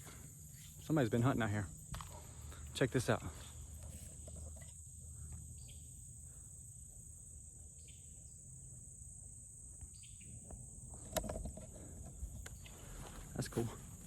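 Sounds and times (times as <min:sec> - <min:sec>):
insects chirping: 0:00.0 - 0:14.0
bird chirps: 0:05.2 - 0:06.5, 0:09.8 - 0:10.4
footsteps through vegetation: 0:12.5 - 0:14.0.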